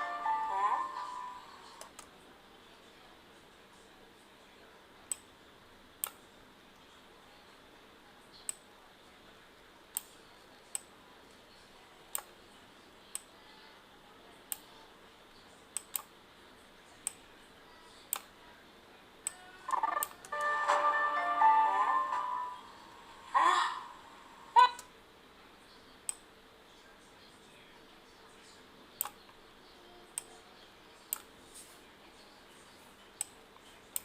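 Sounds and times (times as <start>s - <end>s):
music playback: 0.0s - 1.8s, 19.7s - 24.6s
computer mouse clicks: 1.8s - 2.1s, 5.1s - 5.3s, 15.8s - 16.1s, 29.0s - 29.2s.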